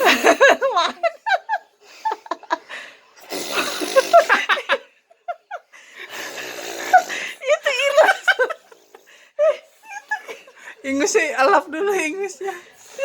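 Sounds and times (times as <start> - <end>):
people laughing and giggling: 0.0 - 2.8, 4.3 - 5.8, 7.4 - 8.8, 9.4 - 10.8.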